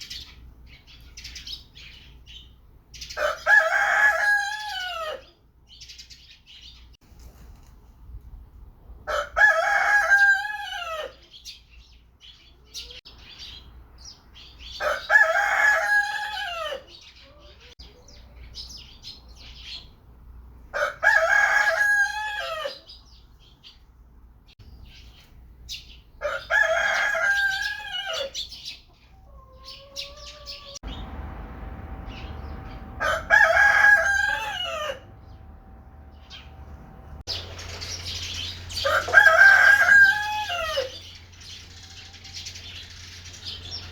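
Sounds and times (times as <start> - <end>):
rooster crowing: 3.2 - 5.3, 9.1 - 11.2, 14.8 - 16.9, 20.8 - 22.8, 26.2 - 28.4, 29.2 - 37.2, 38.8 - 41.0.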